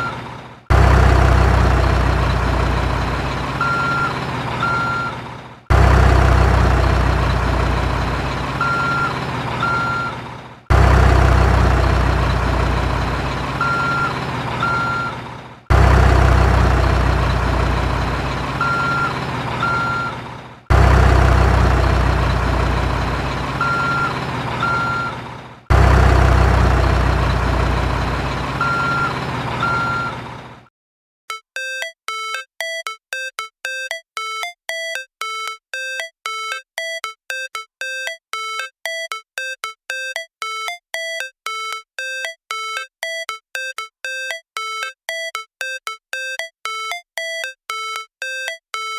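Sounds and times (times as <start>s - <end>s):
truck engine starting: 0.0s - 30.7s
reversing beeps: 3.6s - 5.2s, 8.6s - 10.2s, 13.5s - 15.2s, 18.5s - 20.2s, 23.5s - 25.2s, 28.6s - 30.2s, 31.3s - 48.9s.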